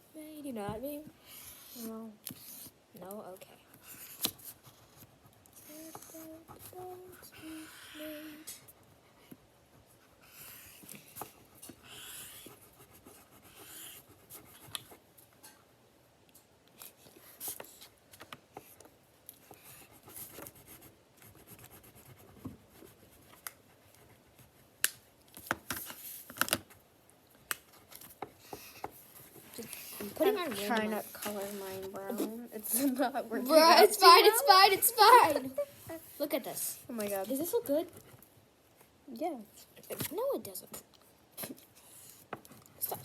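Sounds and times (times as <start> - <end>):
scratching and rubbing on paper: 1.2 - 2.8, 3.7 - 8.1, 8.9 - 15.1, 16.8 - 24.7, 27.7 - 38.2.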